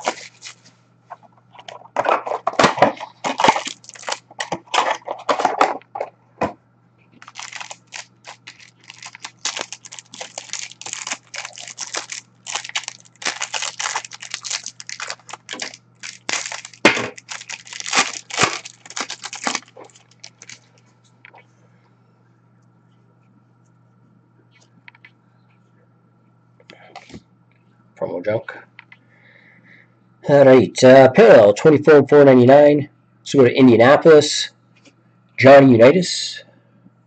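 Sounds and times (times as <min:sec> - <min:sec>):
packaging tearing and crinkling: 0:00.0 - 0:00.6, 0:02.5 - 0:05.3, 0:07.2 - 0:20.7.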